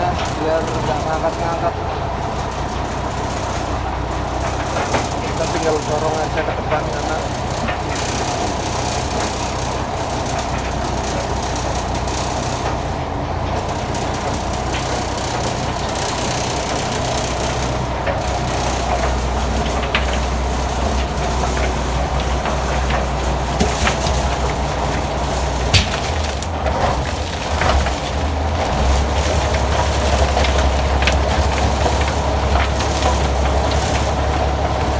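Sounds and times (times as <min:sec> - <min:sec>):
crusher grinding with low drone: 0:00.0 - 0:34.9
sharp cracks: 0:23.3 - 0:28.8.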